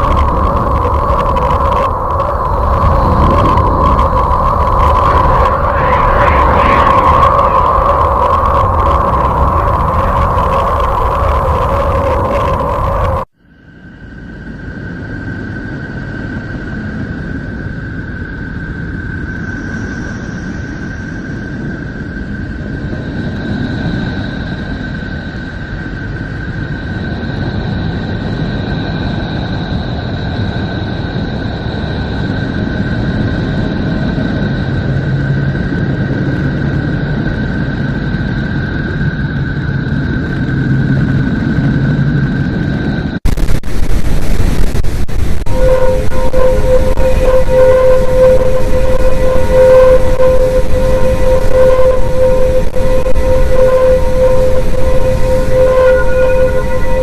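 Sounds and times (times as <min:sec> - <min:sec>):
higher tone: 0:00.0 - 0:13.3, 0:45.4 - 0:57.0
high whistling tone: 0:00.0 - 0:13.4, 0:45.4 - 0:57.0
low rumble drone: 0:00.0 - 0:57.0
pulsing low hum: 0:00.0 - 0:57.0.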